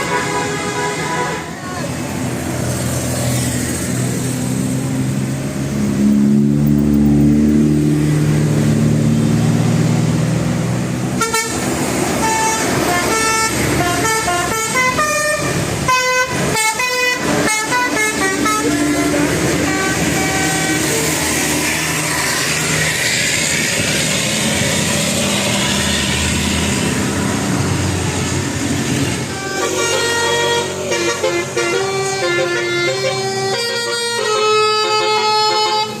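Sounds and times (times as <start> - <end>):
multi-tone musical bus horn: 0.0 - 1.9, 11.2 - 22.5, 28.9 - 36.0
bus engine passing: 0.0 - 36.0.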